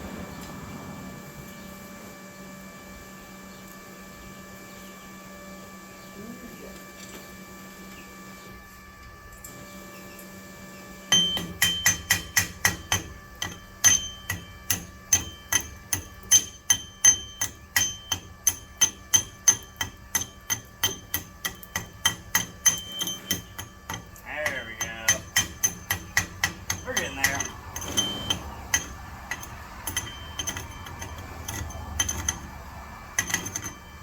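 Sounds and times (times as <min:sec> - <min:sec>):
steady hum: 0:00.0 - 0:34.0
hammer striking steel: 0:11.1 - 0:34.0.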